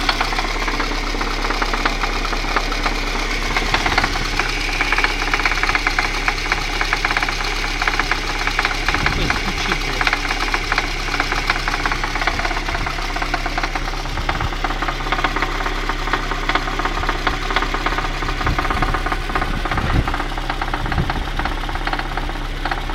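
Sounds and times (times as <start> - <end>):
engine running with knocking: 0.0 - 22.9.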